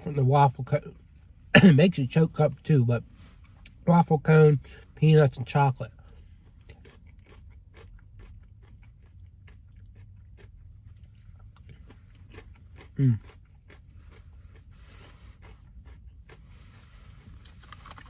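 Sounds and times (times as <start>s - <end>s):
person chewing crunchy food: 4.6s - 18.0s.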